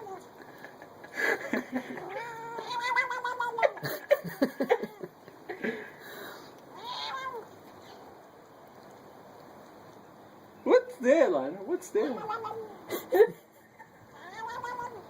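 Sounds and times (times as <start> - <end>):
cat yowling: 2.0 - 3.8, 6.7 - 8.0, 12.0 - 12.9, 14.1 - 15.0.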